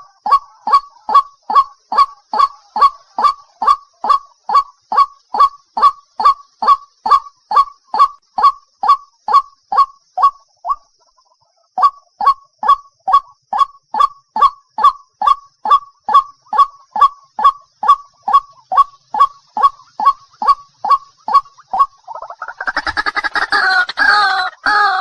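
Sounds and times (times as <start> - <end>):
harsh bird call: 22.6 - 25.0.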